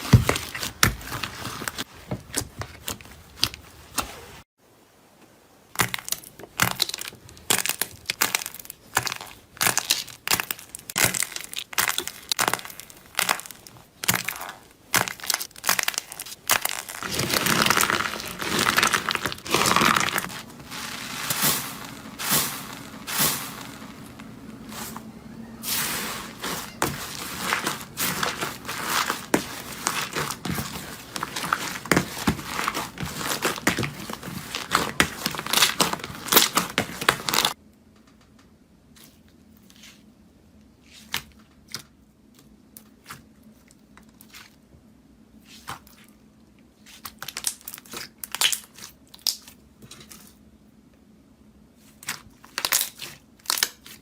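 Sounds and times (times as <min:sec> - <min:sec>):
slime crackling and popping: 0:05.8 - 0:24.5, 0:25.8 - 0:37.6, 0:47.1 - 0:49.5.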